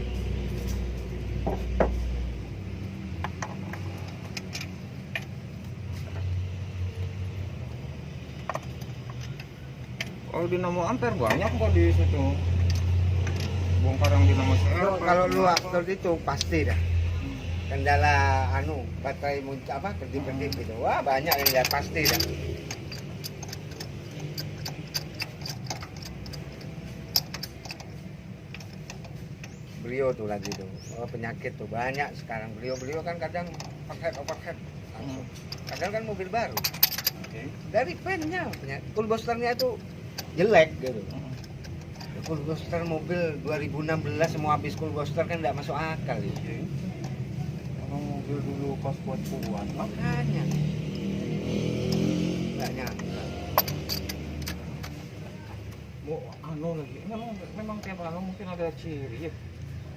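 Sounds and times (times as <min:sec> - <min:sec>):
tools and metal parts clicking: 0:00.6 - 0:59.9
light metallic clicks: 0:20.1 - 0:31.2.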